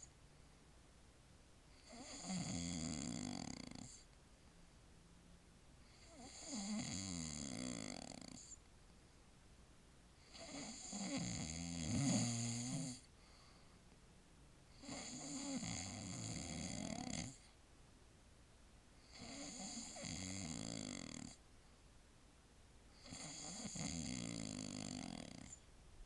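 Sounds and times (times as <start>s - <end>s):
quiet breathing: 0.0s - 1.0s, 1.6s - 9.5s, 10.1s - 17.7s, 18.9s - 22.0s
man snoring: 1.8s - 4.1s, 5.9s - 8.6s, 10.2s - 13.1s, 14.7s - 17.5s, 19.0s - 21.4s, 23.0s - 25.6s.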